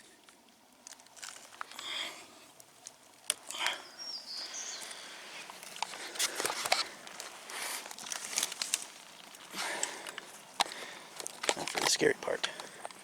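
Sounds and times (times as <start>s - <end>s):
footsteps through dry undergrowth: 4.6s - 13.0s.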